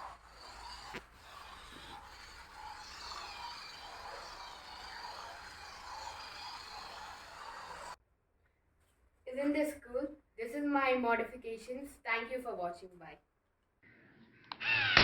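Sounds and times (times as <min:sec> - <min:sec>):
plastic wheels scraping floor: 0:00.0 - 0:08.0
small electric motor whirring: 0:00.0 - 0:08.0.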